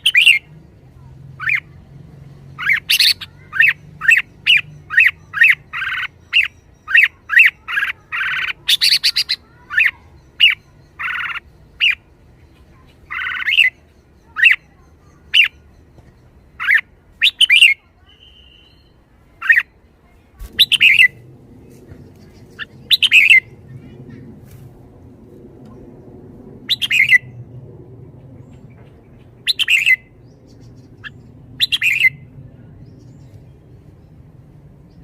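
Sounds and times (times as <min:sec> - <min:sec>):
harsh bird calls: 0:00.0 - 0:01.8, 0:02.4 - 0:19.8, 0:20.4 - 0:21.2, 0:22.0 - 0:24.5, 0:25.8 - 0:27.4, 0:28.2 - 0:34.2
bird sharp chirps: 0:02.6 - 0:19.7, 0:20.4 - 0:21.2, 0:22.1 - 0:24.2, 0:26.7 - 0:27.4, 0:28.4 - 0:32.2.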